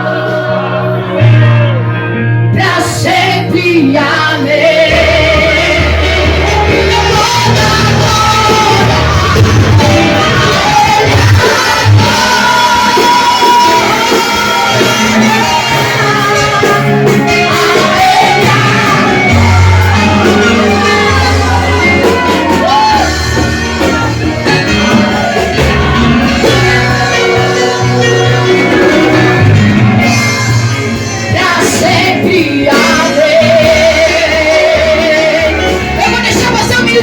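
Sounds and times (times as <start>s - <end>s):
live rock band playing: 0.0s - 37.0s
person singing with shouts: 5.8s - 28.9s.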